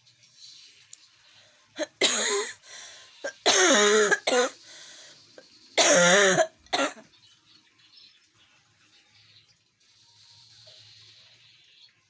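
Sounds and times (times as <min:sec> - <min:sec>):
person sneezing: 0:01.8 - 0:04.6.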